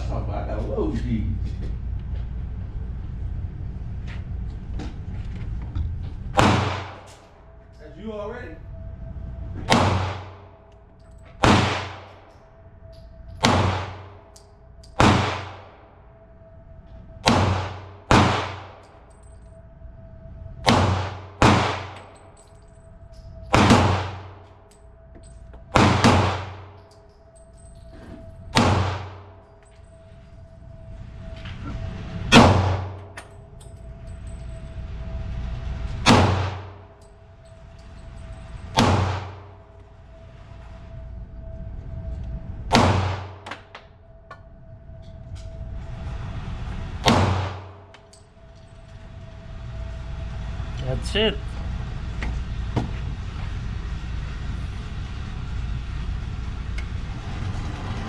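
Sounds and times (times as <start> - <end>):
pistol shots: 6.4 - 7.1, 9.7 - 10.4, 11.4 - 12.1, 13.4 - 14.1, 14.9 - 15.7, 17.2 - 18.8, 20.6 - 22.1, 23.5 - 24.3, 25.8 - 26.7, 28.5 - 29.2, 36.0 - 36.7, 38.8 - 39.5, 42.7 - 43.4, 47.0 - 47.7.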